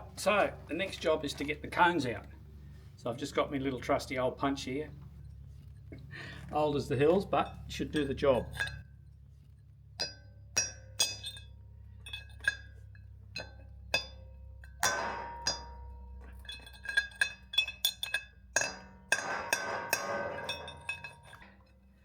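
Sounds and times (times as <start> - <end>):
hammer striking steel punch: 13.4 - 21.4.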